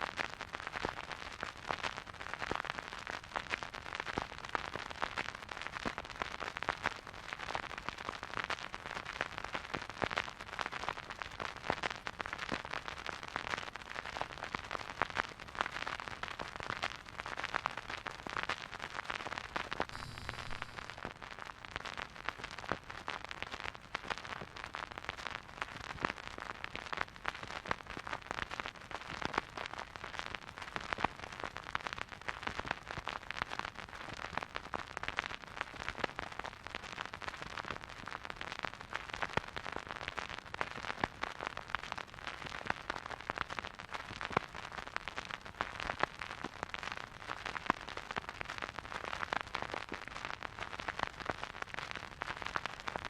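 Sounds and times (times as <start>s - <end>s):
vinyl crackle and pops: 0.0s - 53.0s
soft hiss: 19.9s - 21.1s.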